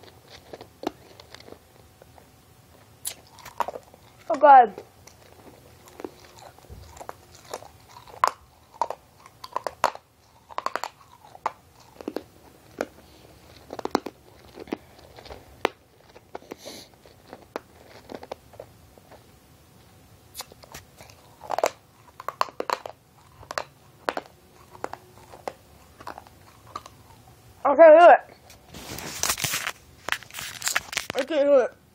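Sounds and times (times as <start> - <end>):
candies being crunched and chewed: 0.0 - 19.3, 20.3 - 27.4, 28.3 - 31.4
wet mouth clicks: 3.0 - 4.3, 20.3 - 27.0.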